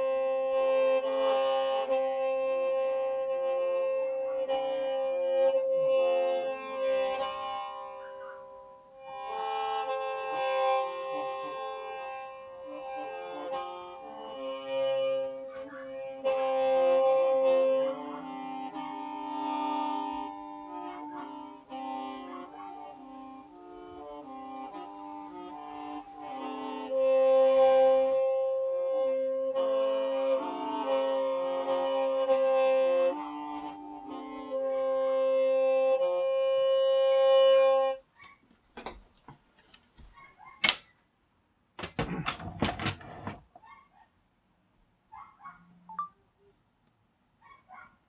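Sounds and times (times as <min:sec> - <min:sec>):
bamboo mouth organ playing: 0:00.0 - 0:38.0
rustling noise: 0:38.4 - 0:40.4.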